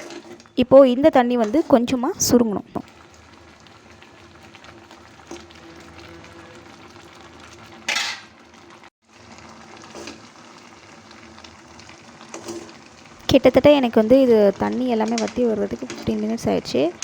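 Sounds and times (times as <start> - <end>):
syrup bubbling and sizzling: 0.0 - 17.0
scrape in pan: 12.3 - 12.8.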